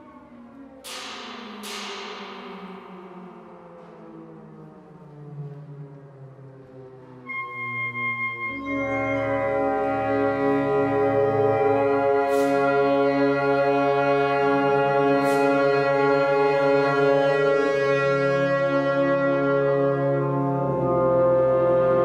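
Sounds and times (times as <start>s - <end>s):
orchestra holding sustained chord: 7.3s - 22.0s.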